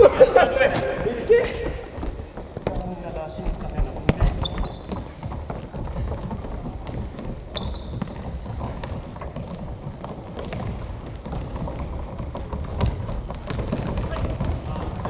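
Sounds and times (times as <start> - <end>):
footfalls on gym floor: 0.0 - 15.0
shoe squeak: 1.7 - 15.0
ball thuds on hard court: 4.0 - 5.1.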